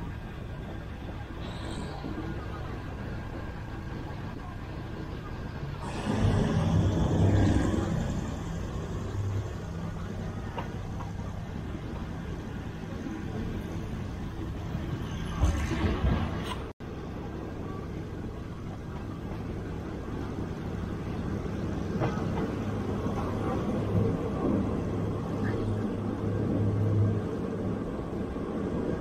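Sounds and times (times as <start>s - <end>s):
train rumbling on track: 0.0s - 29.0s
deep engine drone: 5.8s - 10.4s.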